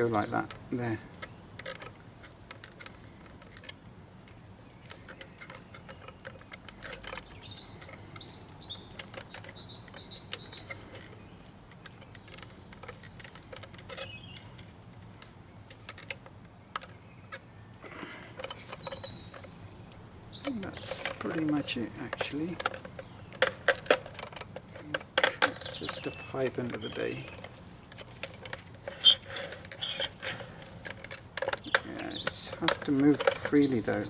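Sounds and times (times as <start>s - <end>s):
birds chirping: 0.0s - 34.0s
plastic clips clicking: 20.4s - 34.0s.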